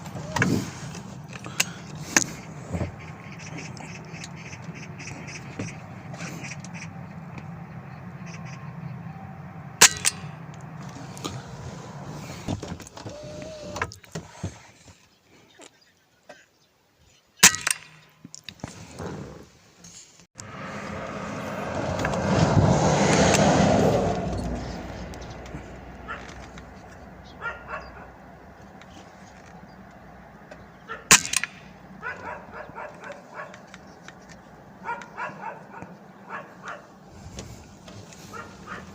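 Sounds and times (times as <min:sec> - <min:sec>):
sharp crack: 0:09.8 - 0:11.4, 0:17.4 - 0:18.5, 0:31.1 - 0:31.8
dog barking: 0:26.0 - 0:26.4, 0:27.3 - 0:28.2, 0:30.8 - 0:31.1, 0:32.0 - 0:33.7, 0:34.8 - 0:37.0, 0:38.2 - 0:38.9.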